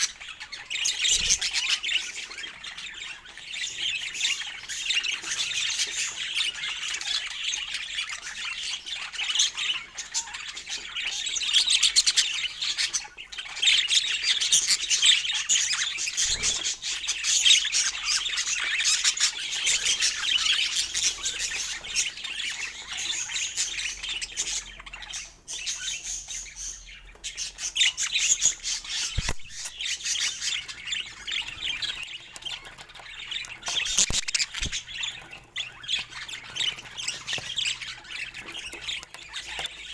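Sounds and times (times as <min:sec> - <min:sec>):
budgerigars chattering and squawking: 0:00.0 - 0:39.9
sharp click: 0:29.2 - 0:29.7.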